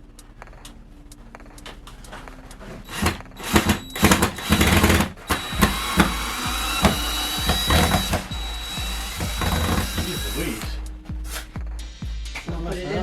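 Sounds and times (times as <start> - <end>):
steady high whine: 0.0 - 11.7
power tool running: 2.8 - 10.8.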